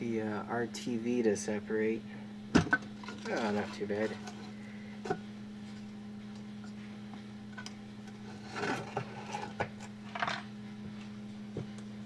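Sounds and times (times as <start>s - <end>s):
steady low hum: 0.0s - 12.0s
metal housing scraping: 3.0s - 5.2s, 8.1s - 10.3s.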